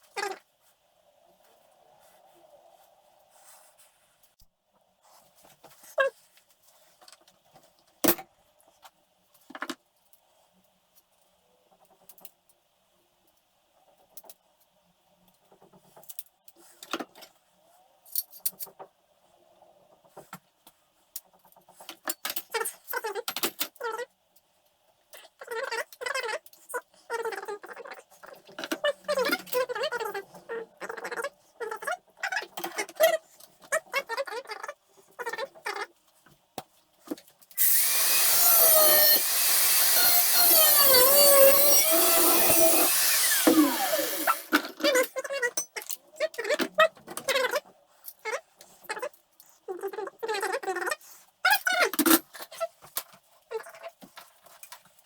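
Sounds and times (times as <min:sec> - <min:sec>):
electric drill boring into steel: 0:37.6 - 0:44.6.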